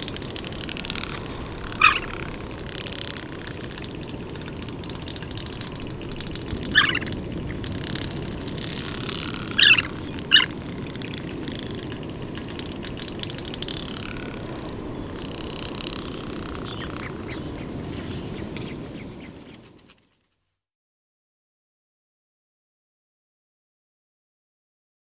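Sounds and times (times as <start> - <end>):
loud bird squeals: 0.0 - 14.6
bird bill snapping rattle: 0.0 - 17.4.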